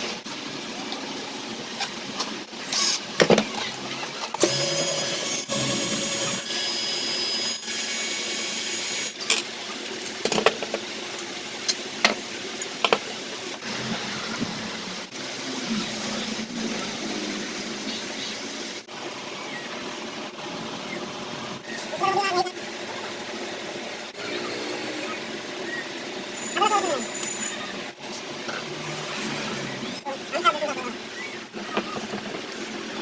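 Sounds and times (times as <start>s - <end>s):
small electric motor whirring: 2.7s - 3.0s, 4.4s - 9.2s.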